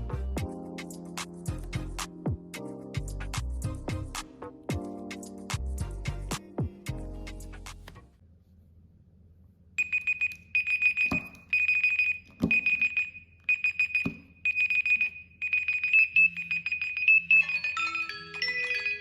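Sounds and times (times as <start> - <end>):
phone alarm beeping: 9.8 - 19.0
melodic alarm tone: 14.6 - 19.0.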